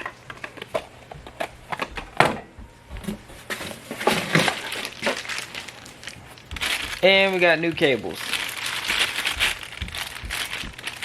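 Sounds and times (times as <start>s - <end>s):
small parts and packaging handled: 3.0s - 11.0s.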